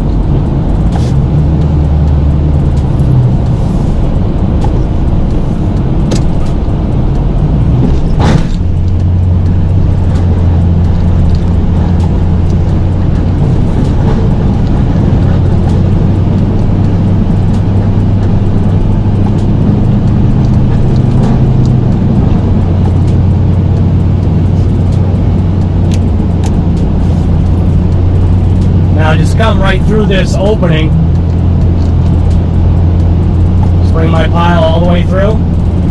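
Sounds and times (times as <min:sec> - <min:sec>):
truck engine running: 0:00.0 - 0:35.9
sharp clunk: 0:07.8 - 0:08.7.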